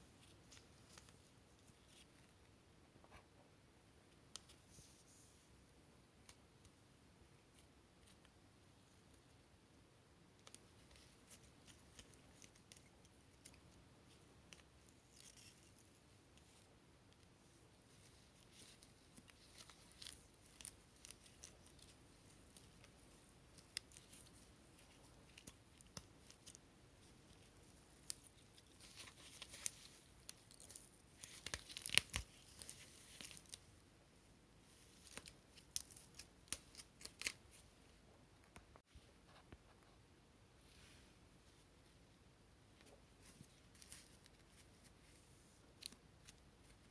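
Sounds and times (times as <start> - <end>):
rustling: 10.4 - 33.8, 42.7 - 46.9.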